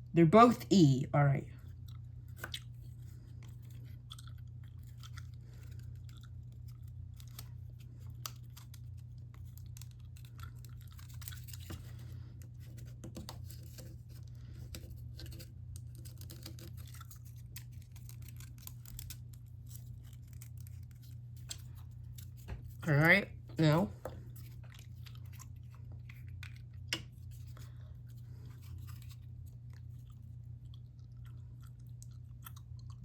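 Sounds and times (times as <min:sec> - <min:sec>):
steady low hum: 0:00.0 - 0:33.0
small parts clicking and rustling: 0:02.3 - 0:22.5.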